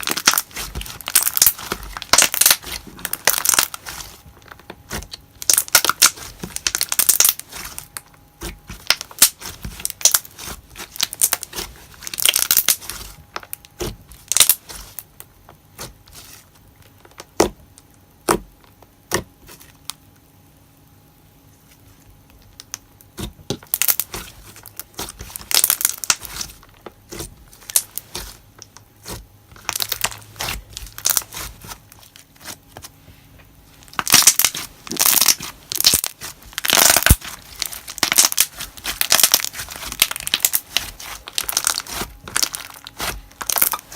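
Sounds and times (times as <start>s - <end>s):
slime squished by hand: 0.0s - 19.9s, 21.7s - 43.9s.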